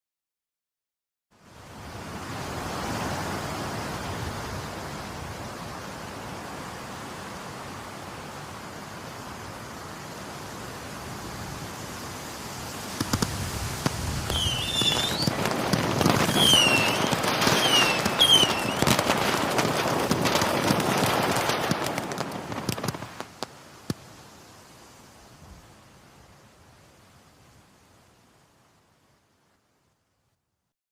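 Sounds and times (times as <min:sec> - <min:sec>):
steady rushing noise: 0:09.1 - 0:23.6
firework hiss: 0:11.4 - 0:25.2
fireworks crackling and popping: 0:12.8 - 0:24.2
firework whistles: 0:13.8 - 0:23.3.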